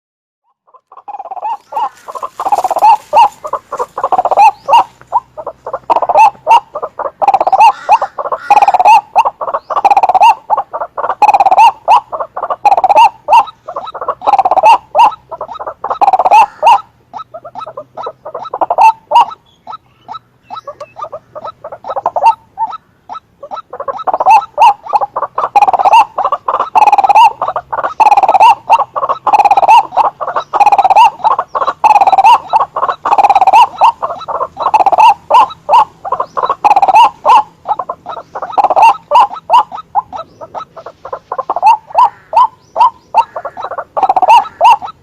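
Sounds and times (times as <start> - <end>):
bird harsh repeated calls: 0.5 - 45.0.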